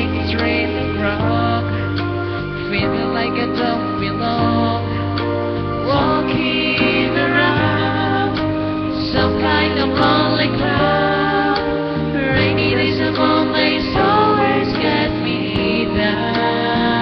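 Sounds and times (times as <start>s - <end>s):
bass line: 0.0s - 17.0s
sustained instrumental accompaniment: 0.0s - 17.0s
woman singing with vibrato: 9.0s - 17.0s.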